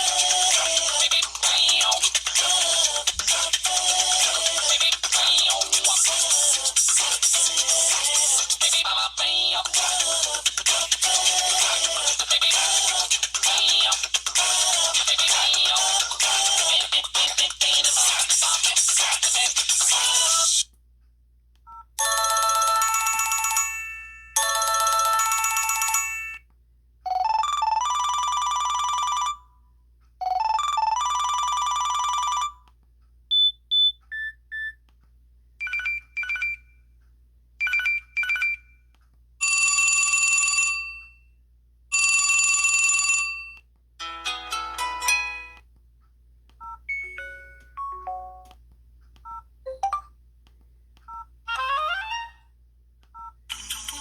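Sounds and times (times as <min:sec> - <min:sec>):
phone ringtones and jingles: 0:46.9 - 0:48.5.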